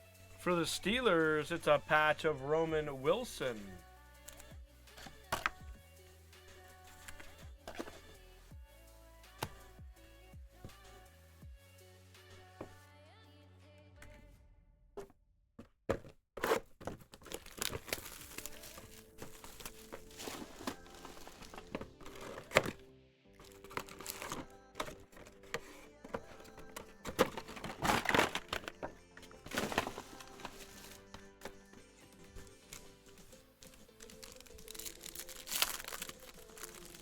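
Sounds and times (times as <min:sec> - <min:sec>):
quiet background music: 0:00.0 - 0:14.4, 0:17.2 - 0:37.0
cards being handled: 0:03.1 - 0:05.6, 0:07.0 - 0:08.2, 0:15.9 - 0:22.8, 0:23.4 - 0:31.7, 0:32.3 - 0:37.0
card pack wrappers crinkling: 0:16.5 - 0:22.8, 0:23.4 - 0:31.6, 0:32.4 - 0:37.0.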